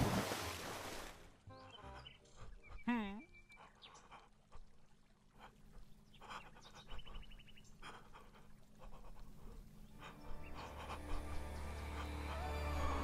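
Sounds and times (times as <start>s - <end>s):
breathy huffs: 5.4s - 13.0s
low music: 9.9s - 13.0s.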